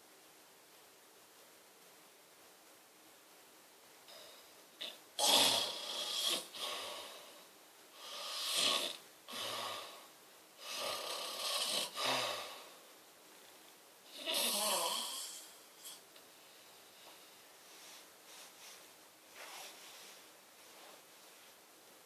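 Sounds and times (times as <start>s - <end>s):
person snoring: 4.1s - 7.4s, 8.0s - 12.8s, 14.1s - 16.0s.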